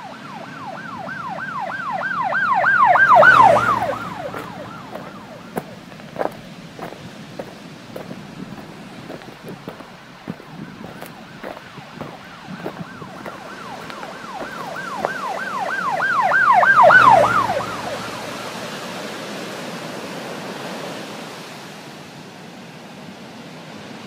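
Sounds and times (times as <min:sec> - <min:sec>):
emergency siren yelping: 0:00.0 - 0:08.1, 0:09.1 - 0:19.4
steady rushing noise: 0:03.1 - 0:15.7.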